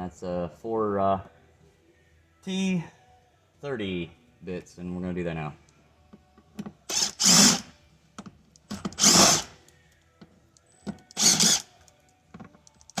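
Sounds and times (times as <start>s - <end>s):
power drill running: 6.9s - 7.7s, 9.0s - 9.5s, 11.2s - 11.6s.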